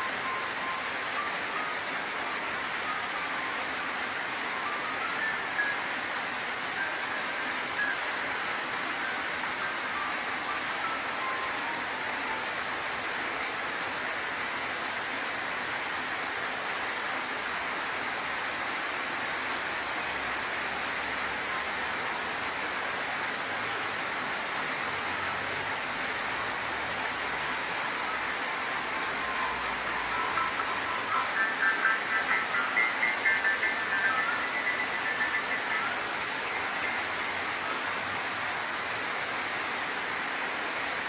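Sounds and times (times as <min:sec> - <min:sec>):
rushing hiss: 0:24.8 - 0:41.0.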